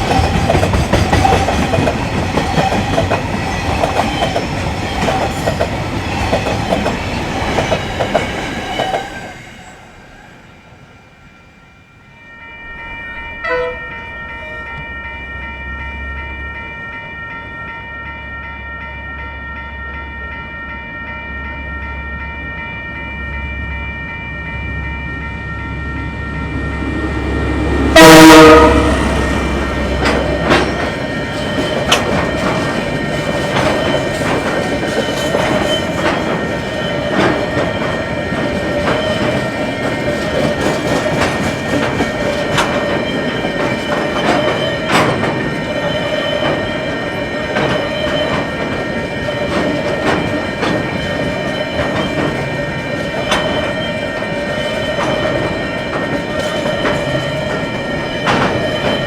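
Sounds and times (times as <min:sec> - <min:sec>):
steady high tone: 0:11.5 - 0:34.1
train horn blast: 0:13.2 - 0:14.8, 0:26.4 - 0:31.0
diesel locomotive rumbling: 0:23.6 - 0:59.0.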